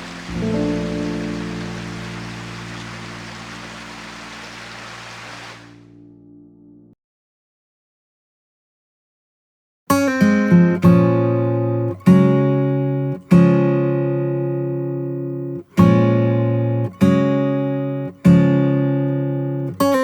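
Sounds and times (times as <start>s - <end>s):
acoustic guitar strumming chords: 0.0s - 5.5s, 9.9s - 20.0s.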